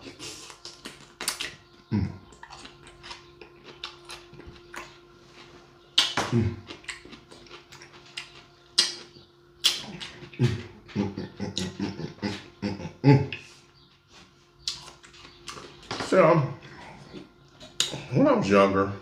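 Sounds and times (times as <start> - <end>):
wet chewing and lip smacking: 0.0 - 5.0, 6.0 - 10.4, 14.6 - 15.9.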